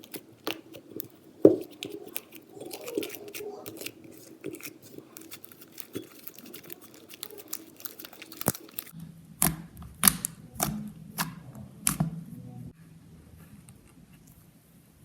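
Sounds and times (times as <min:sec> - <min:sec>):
slime wet crackles: 0:00.0 - 0:08.9.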